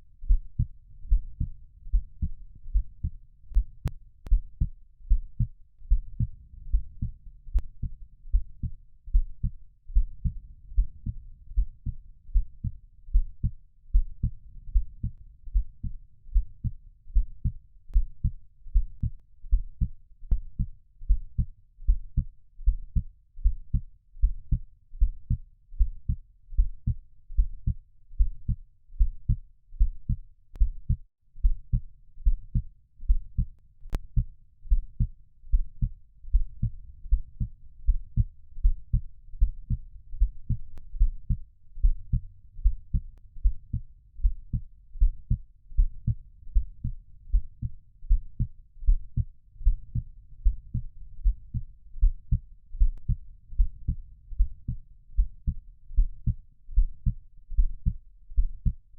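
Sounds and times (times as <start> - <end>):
heartbeat thumps: 0.2 - 58.8.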